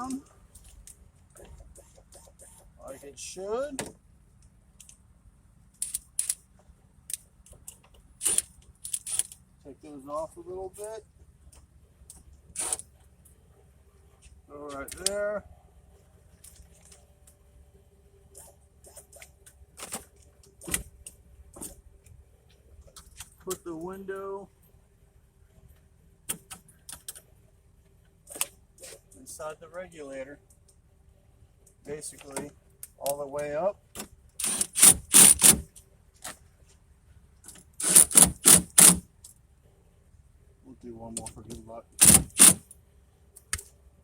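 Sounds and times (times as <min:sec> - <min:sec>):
ratchet wrench clicking: 0:05.8 - 0:06.4, 0:08.2 - 0:09.4, 0:34.4 - 0:35.7, 0:37.8 - 0:39.0, 0:42.0 - 0:42.7.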